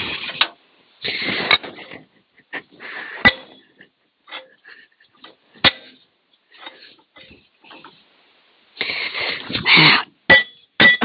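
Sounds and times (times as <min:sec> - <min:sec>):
sharp metal knocks: 0:10.3 - 0:11.0.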